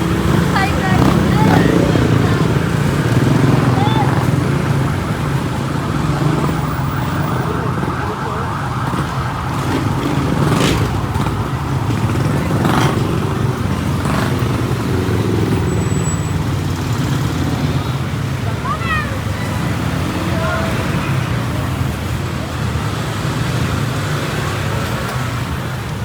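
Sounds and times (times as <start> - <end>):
vehicles passing by: 0.0 - 26.0.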